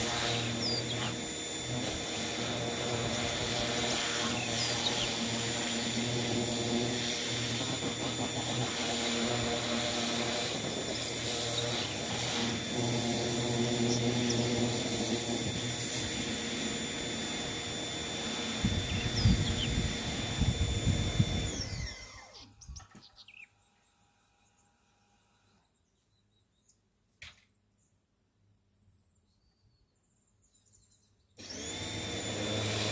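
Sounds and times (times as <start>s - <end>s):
water jet hissing: 0.0s - 17.4s
pressure cleaner motor: 0.0s - 22.7s, 31.4s - 32.9s.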